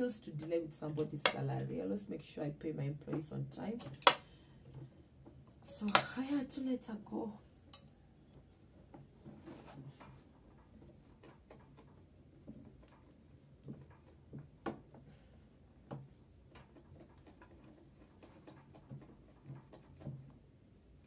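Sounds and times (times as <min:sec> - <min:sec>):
small parts clicking and tapping: 0:03.8 - 0:06.1.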